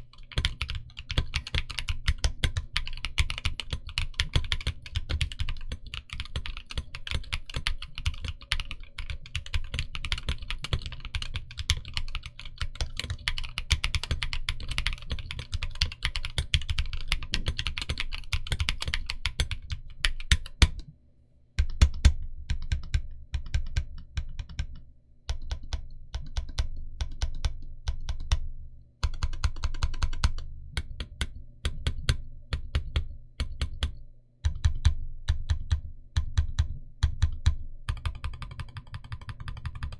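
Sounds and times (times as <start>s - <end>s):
mechanical keyboard typing: 0.2s - 20.8s, 29.0s - 33.9s, 36.5s - 39.9s.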